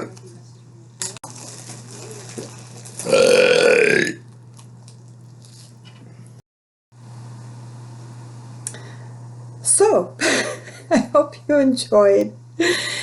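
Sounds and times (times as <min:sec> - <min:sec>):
person burping: 0:03.0 - 0:04.3
steady low hum: 0:07.0 - 0:13.0.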